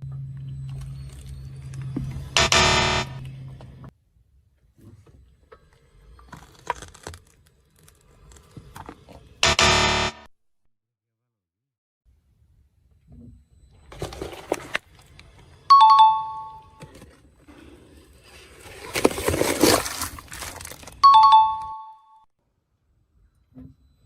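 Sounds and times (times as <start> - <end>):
object crushed under car tyre: 6.3 - 8.6, 18.5 - 21.1.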